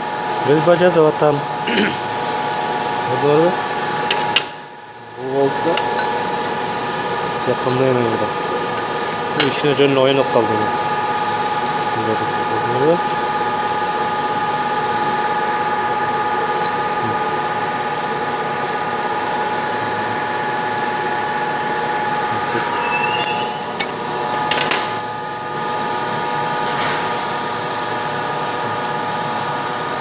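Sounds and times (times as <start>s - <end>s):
stone-working machine whining: 5.3s - 30.0s.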